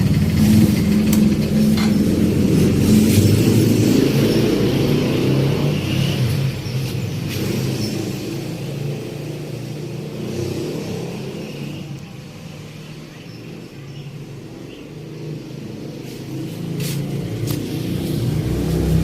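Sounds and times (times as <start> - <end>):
motor scooter engine running: 0.0 - 5.2.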